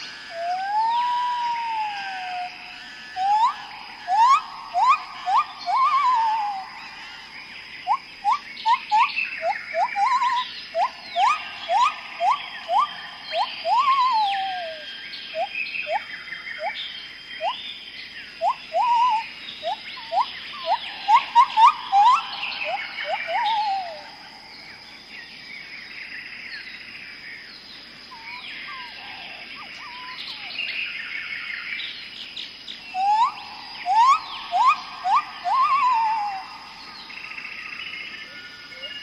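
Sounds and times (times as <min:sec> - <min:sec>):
birds chirping: 0:00.0 - 0:39.0.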